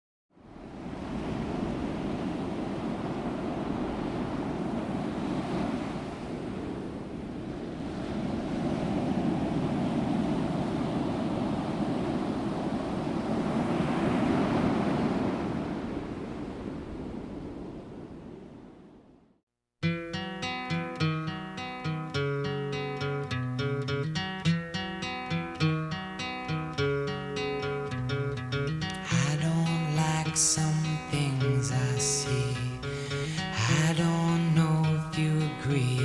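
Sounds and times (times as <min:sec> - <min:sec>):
ocean surf rushing: 0:00.4 - 0:18.8, 0:28.7 - 0:36.0.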